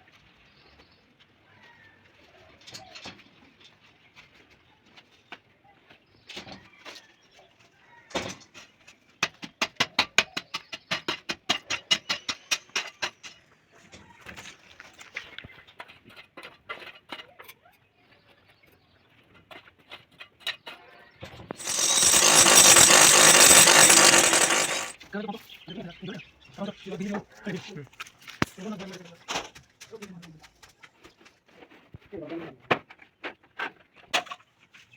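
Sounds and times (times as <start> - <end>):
loud machine noise: 21.6 - 25.0
rapid tool knocking: 21.6 - 25.0.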